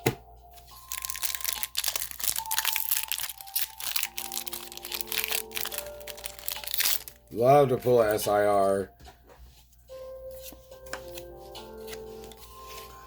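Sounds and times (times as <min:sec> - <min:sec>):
soft background music: 0:00.0 - 0:13.0
packaging crinkling: 0:00.8 - 0:07.3.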